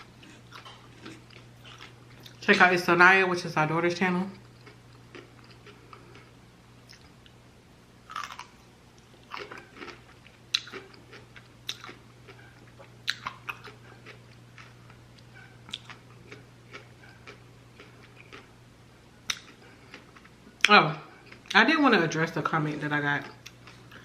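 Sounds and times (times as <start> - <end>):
faint low hum: 0.0 - 24.0
chewing mouth clicks and smacks: 9.4 - 14.7, 19.3 - 20.3.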